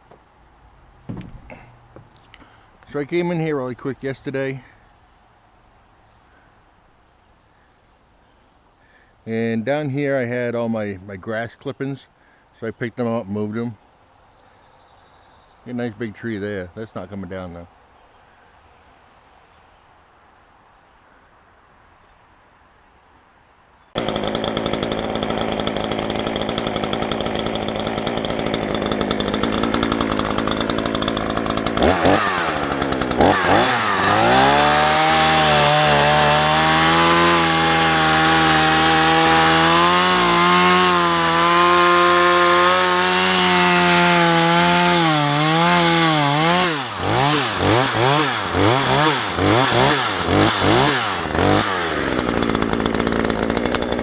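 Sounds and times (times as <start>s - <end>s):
two-stroke chainsaw revving: 1.1s - 3.1s, 24.0s - 54.0s.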